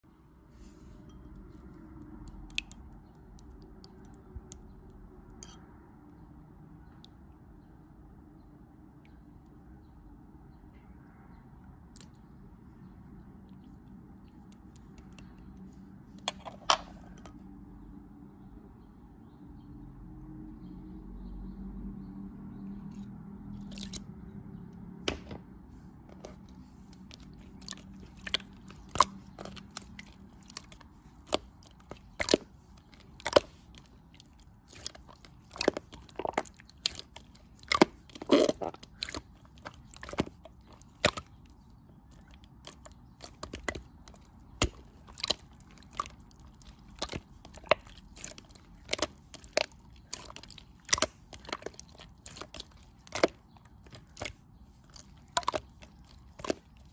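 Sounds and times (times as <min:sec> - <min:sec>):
sharp crisp clicks and crunches: 0:26.1 - 0:56.9.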